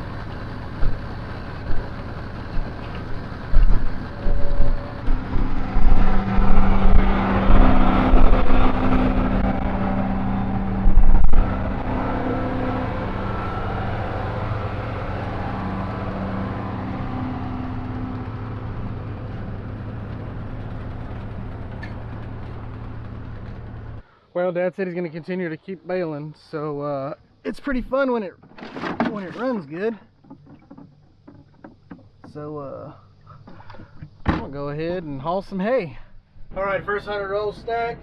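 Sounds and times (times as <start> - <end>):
tractor engine running: 0.0 - 24.0.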